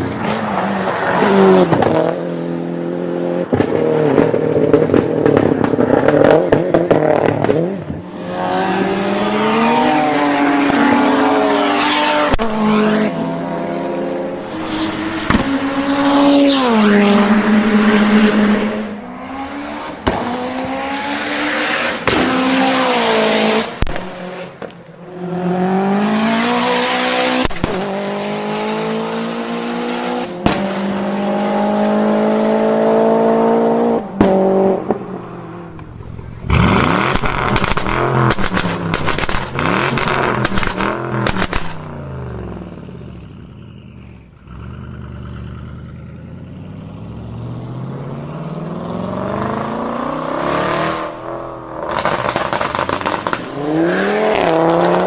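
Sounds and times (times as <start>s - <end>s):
car engine accelerating: 0.9s - 55.0s
exhaust pops and bangs: 3.5s - 8.0s, 36.5s - 41.8s, 51.9s - 53.5s.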